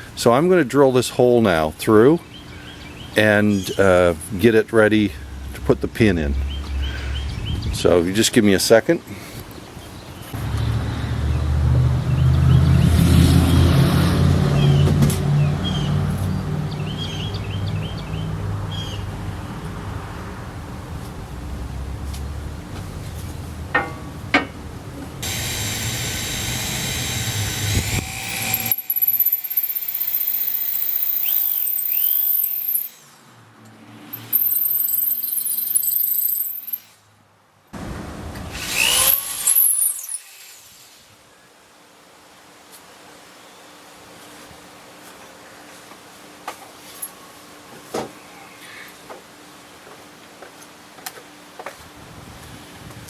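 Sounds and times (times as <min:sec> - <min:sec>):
birds chirping: 0:05.2 - 0:08.0, 0:14.6 - 0:19.6
power drill whining: 0:25.2 - 0:33.0, 0:38.5 - 0:40.7.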